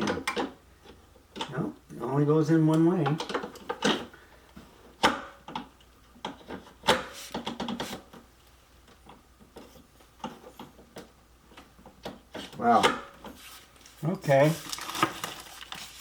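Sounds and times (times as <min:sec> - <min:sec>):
parts knocking and clicking: 0:00.0 - 0:01.6, 0:02.7 - 0:13.3.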